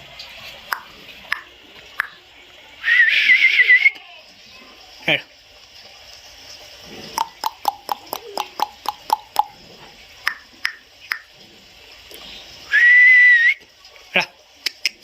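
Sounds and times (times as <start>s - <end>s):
tongue clicks: 0.7s - 2.2s, 7.2s - 9.6s, 14.6s - 15.0s
short high whistle: 2.8s - 4.0s, 12.7s - 13.6s.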